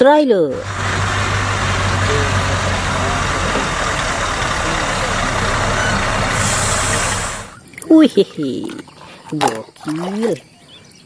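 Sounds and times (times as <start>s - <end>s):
small motor humming: 0.6s - 7.6s.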